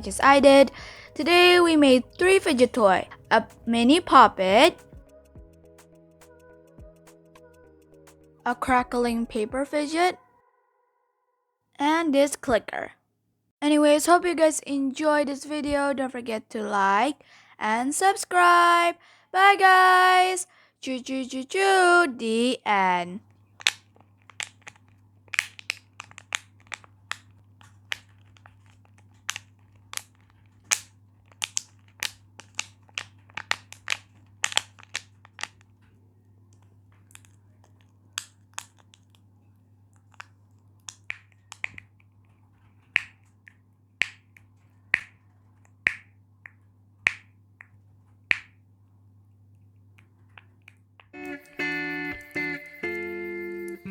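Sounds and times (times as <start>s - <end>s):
guitar music: 0.0s - 6.4s, 51.2s - 53.9s
plastic toy clicking: 23.5s - 35.8s, 36.5s - 39.2s, 40.0s - 42.1s.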